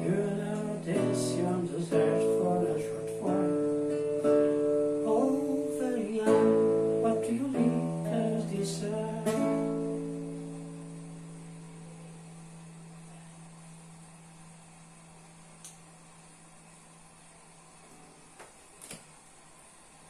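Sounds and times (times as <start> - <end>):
acoustic guitar music: 0.0 - 12.8.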